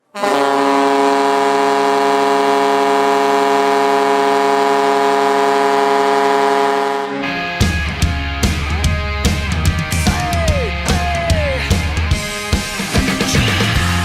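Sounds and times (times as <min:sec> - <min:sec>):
hockey goal horn blast: 0:00.1 - 0:07.5.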